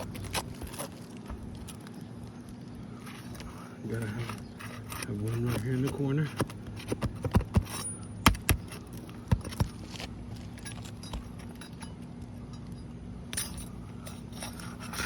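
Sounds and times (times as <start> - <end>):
pry bar scraping roofing nails: 3.3 - 10.1.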